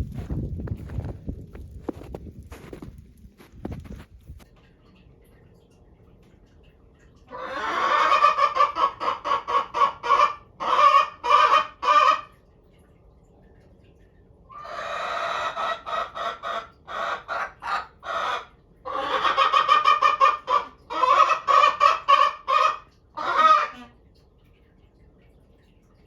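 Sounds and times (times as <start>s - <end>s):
chicken calling: 7.3s - 12.3s, 14.5s - 24.0s.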